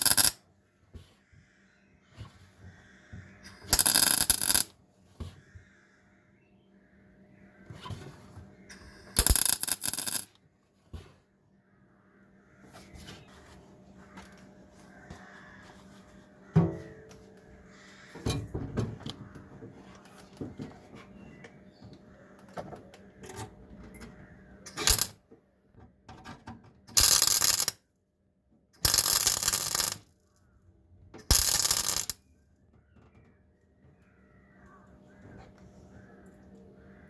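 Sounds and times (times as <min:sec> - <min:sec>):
metal knocks and clatter: 0:16.6 - 0:17.1.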